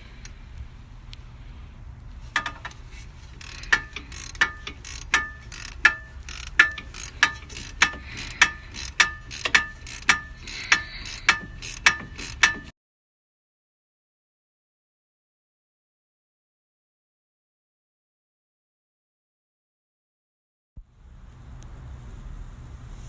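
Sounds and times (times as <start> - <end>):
low steady hum: 0.0 - 12.7
sharp metallic clicks: 3.4 - 12.7.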